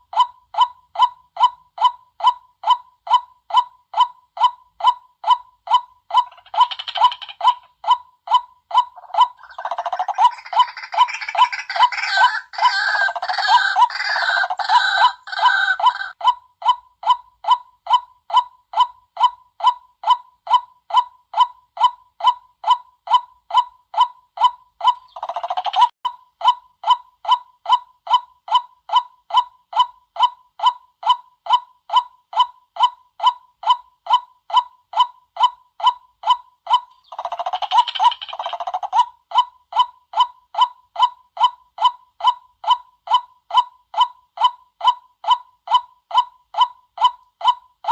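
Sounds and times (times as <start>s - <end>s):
bird chattering cackles: 6.1s - 7.7s, 8.8s - 16.2s, 24.8s - 25.9s, 36.7s - 39.1s
bird croaking calls: 6.2s - 7.6s, 9.0s - 16.2s, 36.9s - 39.0s.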